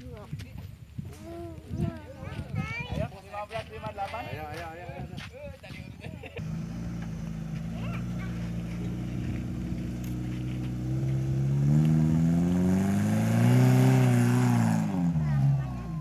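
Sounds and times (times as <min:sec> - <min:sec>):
car engine revving under load: 0:06.4 - 0:16.0.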